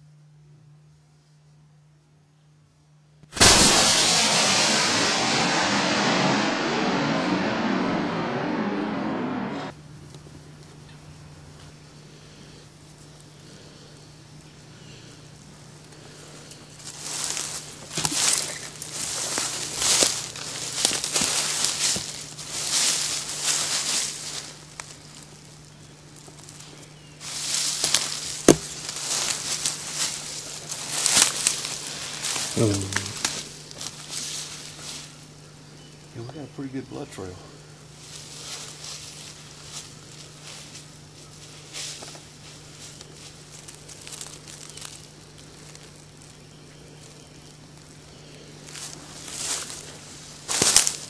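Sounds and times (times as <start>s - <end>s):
sharp knock: 3.4s - 9.7s
steady low hum: 3.4s - 9.7s
soft rustling and crackling: 38.0s - 48.0s.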